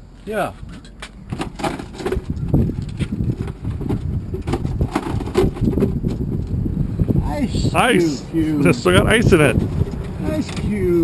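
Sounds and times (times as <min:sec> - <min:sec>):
refrigerator knocks and clatter: 0:01.3 - 0:06.4
low rumble: 0:02.2 - 0:11.0.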